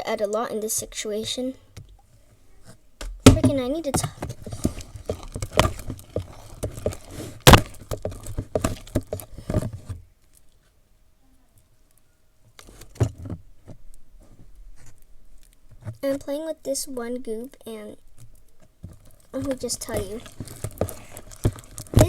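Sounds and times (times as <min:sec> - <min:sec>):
clicks and knocks of handling: 0:03.0 - 0:10.4, 0:18.2 - 0:22.0.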